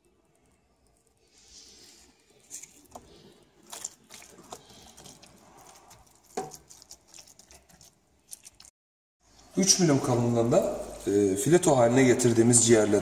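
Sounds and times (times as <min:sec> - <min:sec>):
wet squelches of raw liver: 0:01.6 - 0:08.7.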